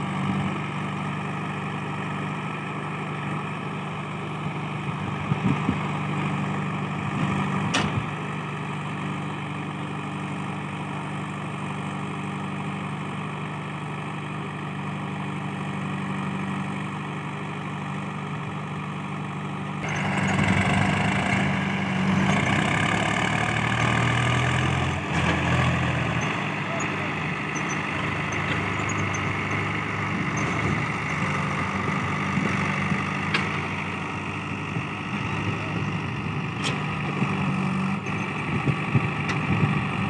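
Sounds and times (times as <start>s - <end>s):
diesel engine idling and revving: 0.0s - 40.0s.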